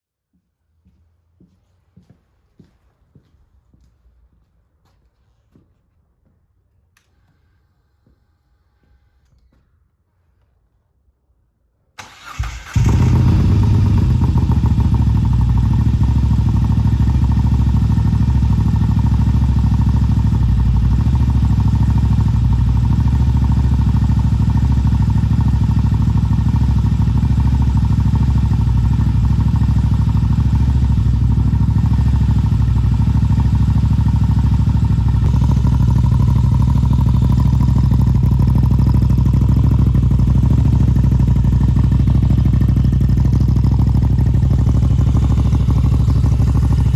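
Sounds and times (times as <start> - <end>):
motorcycle engine idling: 12.0 - 46.9.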